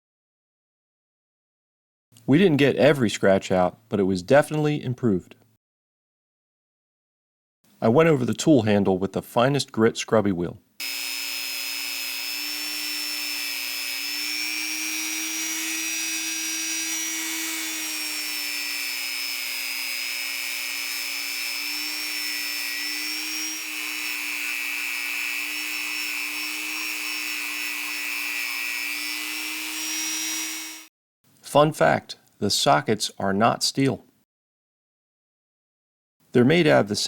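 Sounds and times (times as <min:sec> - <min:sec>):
power tool motor whine: 0:10.8 - 0:30.9.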